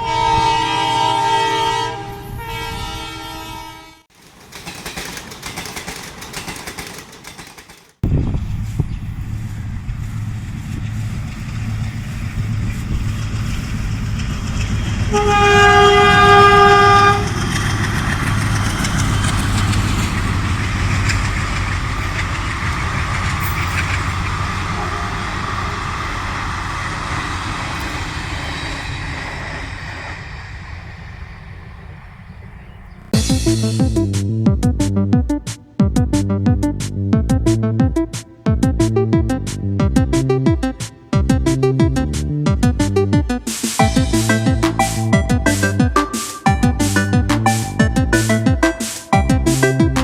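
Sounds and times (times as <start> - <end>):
locomotive multi-tone horn: 0.0 - 4.1, 13.7 - 26.9, 43.8 - 46.4
diesel engine chugging: 4.3 - 50.0.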